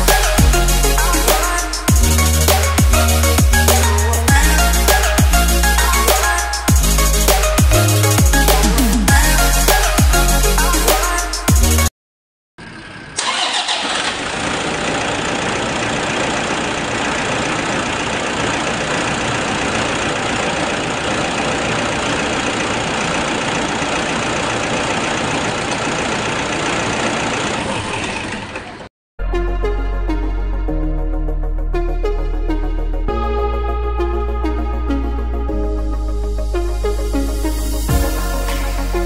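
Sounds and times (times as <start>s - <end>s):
car engine running: 12.6s - 28.9s.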